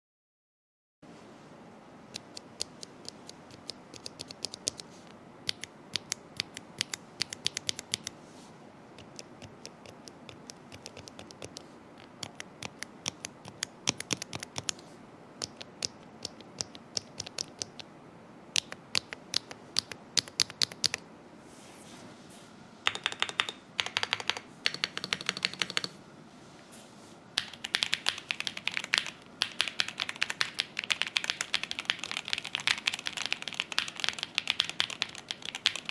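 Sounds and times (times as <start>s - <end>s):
mechanical keyboard keystrokes clacking: 2.2s - 4.9s, 5.5s - 8.1s, 9.0s - 14.8s, 15.4s - 17.8s, 18.6s - 21.0s, 22.9s - 26.0s, 27.4s - 35.9s.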